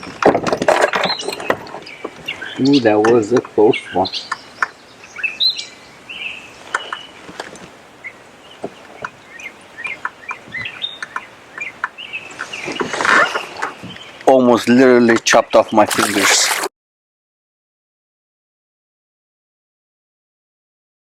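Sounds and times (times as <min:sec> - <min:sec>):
birds chirping: 0:00.0 - 0:16.7.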